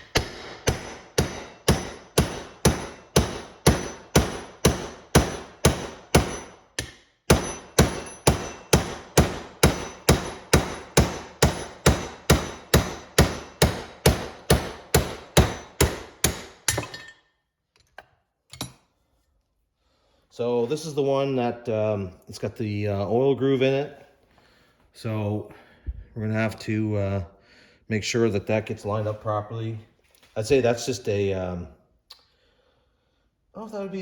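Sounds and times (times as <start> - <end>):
hammer blows on metal: 0.0 - 16.6.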